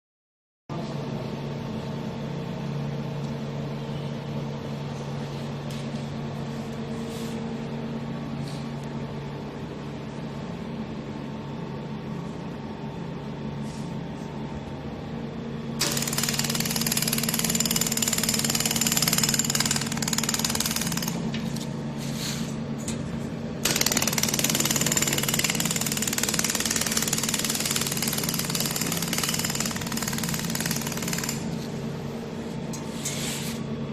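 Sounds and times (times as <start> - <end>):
machine hum: 5.3 - 33.9.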